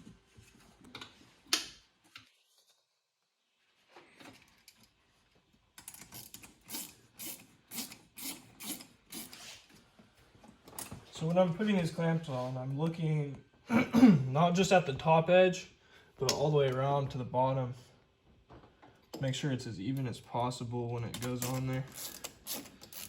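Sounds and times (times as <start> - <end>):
hand ratchet clicking: 6.0 - 9.4, 21.2 - 23.0.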